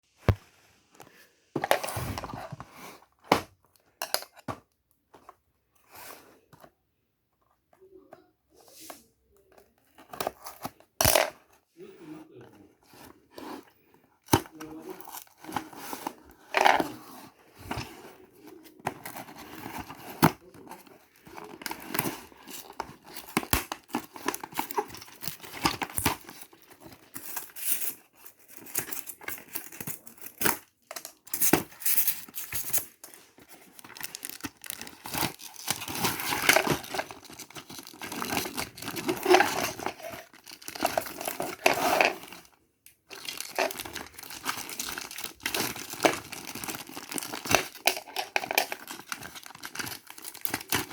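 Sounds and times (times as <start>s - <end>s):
packaging crinkling and tearing: 14.2s - 50.9s.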